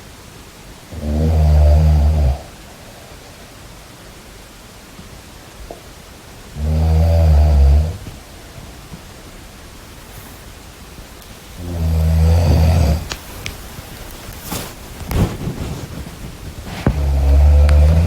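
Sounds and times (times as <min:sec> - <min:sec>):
loud low snores: 0:00.9 - 0:02.6, 0:06.6 - 0:08.1, 0:11.6 - 0:13.2, 0:16.8 - 0:18.0
breathy hiss: 0:06.2 - 0:18.0.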